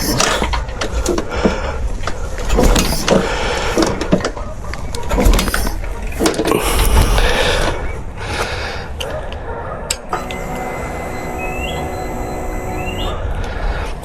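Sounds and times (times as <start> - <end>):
mechanical clatter: 0.0 - 7.4
motorcycle engine being kicked over: 2.4 - 4.4, 5.0 - 7.2.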